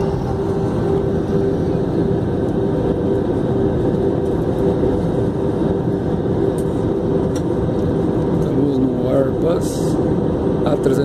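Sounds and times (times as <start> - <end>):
airliner cabin rumble: 0.0 - 11.0
mid-pitched hum: 0.0 - 11.0.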